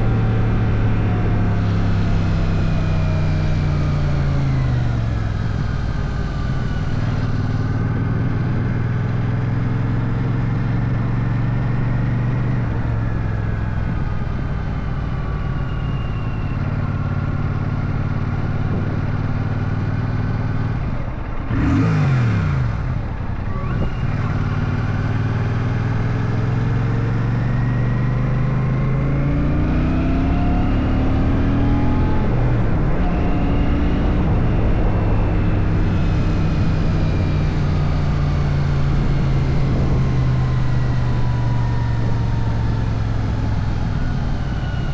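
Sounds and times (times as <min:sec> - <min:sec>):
motorcycle engine running: 0:00.0 - 0:44.9.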